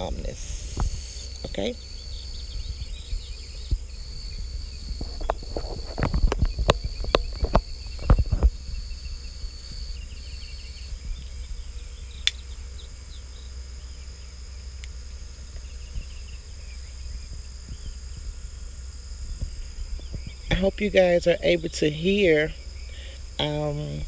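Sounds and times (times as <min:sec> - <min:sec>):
crickets trilling: 0:00.0 - 0:24.0
faint bird chirps: 0:00.0 - 0:24.0.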